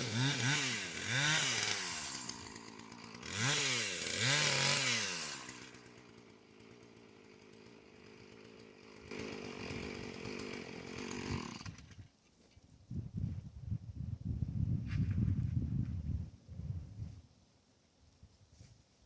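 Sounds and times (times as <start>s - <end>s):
chainsaw revving and idling: 0.0s - 12.0s.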